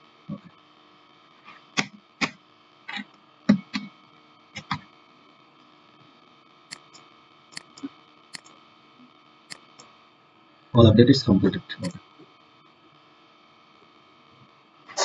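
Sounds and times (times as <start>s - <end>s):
faint mains hum: 0.0s - 15.0s
computer clicking: 6.7s - 7.0s, 7.6s - 8.6s, 9.5s - 9.9s.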